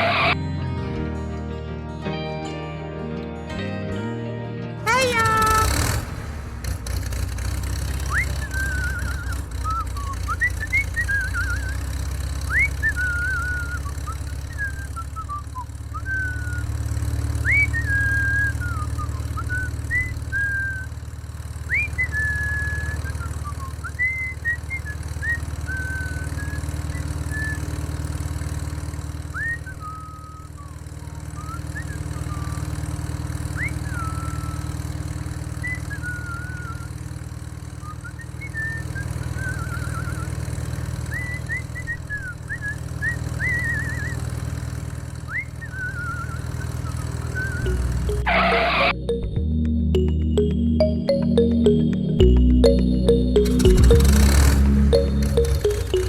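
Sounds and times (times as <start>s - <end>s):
short high rising chirps: 47.6s - 56.0s.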